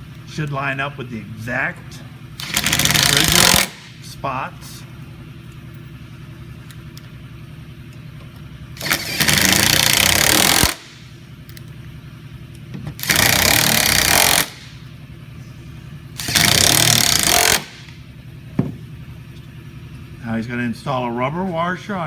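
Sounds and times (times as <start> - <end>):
steady low hum: 0.0 - 22.0
impact driver running: 2.4 - 4.0, 8.8 - 11.1, 13.0 - 14.8, 16.2 - 18.0.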